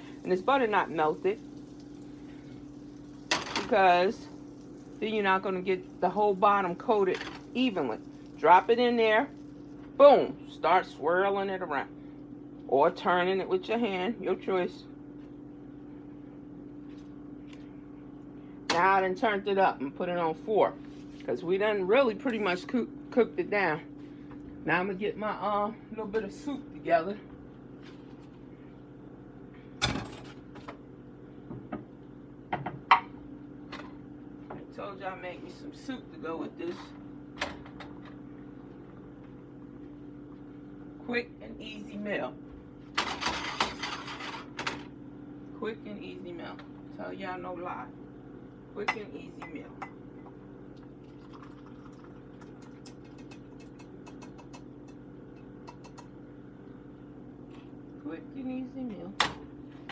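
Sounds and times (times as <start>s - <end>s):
butter sizzling in frying pan: 0.0s - 10.0s
steady low hum: 0.0s - 59.9s.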